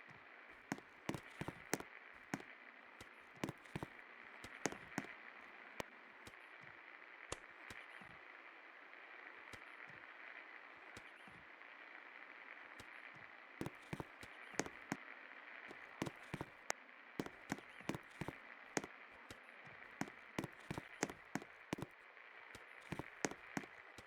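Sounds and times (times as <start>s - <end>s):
sharp clicks and ticks: 13.6s - 15.0s.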